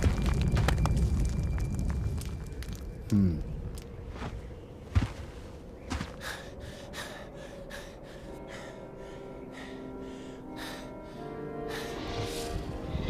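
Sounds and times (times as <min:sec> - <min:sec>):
soft sustained music tones: 0:00.0 - 0:13.0
heavy gasping breaths: 0:06.2 - 0:12.0.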